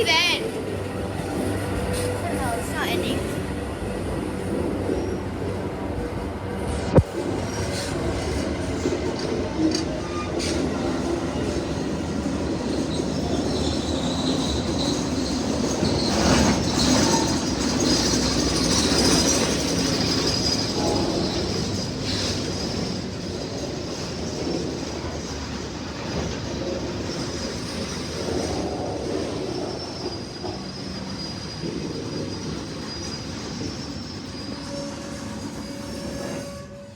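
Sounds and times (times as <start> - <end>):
train wheels rumbling: 0.0 - 36.9
wheel squeal: 12.2 - 24.3, 26.2 - 36.9.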